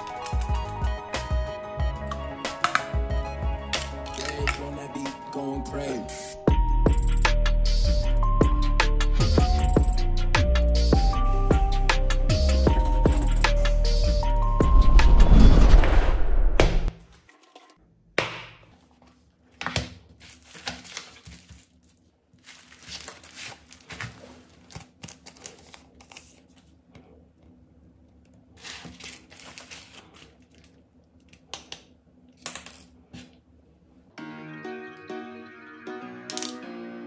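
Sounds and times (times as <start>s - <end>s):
film scraping and crinkling: 0.0s - 0.8s
small tools clicking and tapping: 0.0s - 0.8s.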